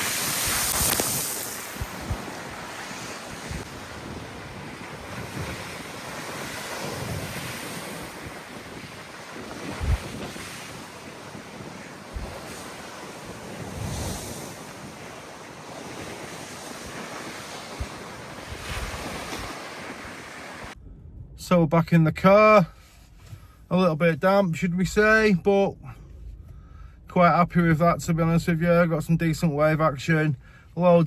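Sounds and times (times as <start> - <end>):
sea waves breaking: 0.0 - 20.8
wind gusts buffeting microphone: 0.0 - 21.4.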